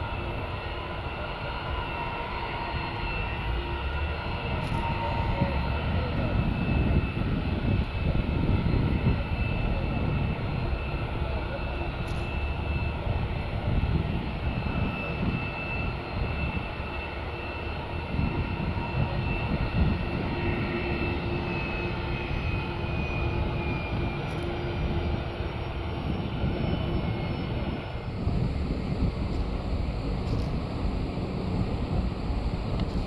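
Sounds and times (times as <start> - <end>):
jet engines running: 0.0 - 33.0.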